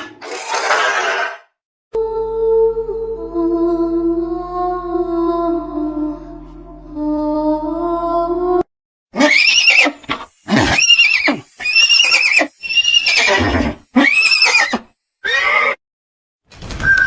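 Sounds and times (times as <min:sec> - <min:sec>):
horse-like whinnying calls: 0:09.2 - 0:15.8.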